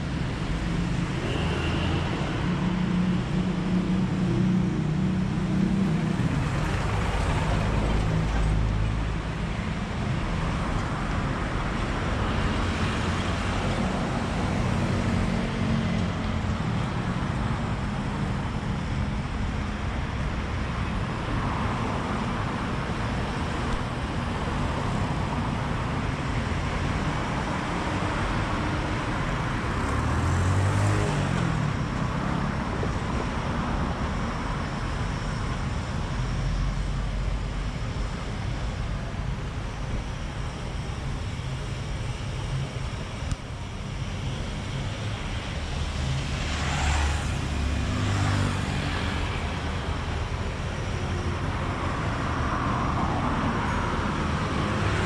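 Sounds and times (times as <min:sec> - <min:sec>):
road traffic: 0:00.0 - 0:55.0.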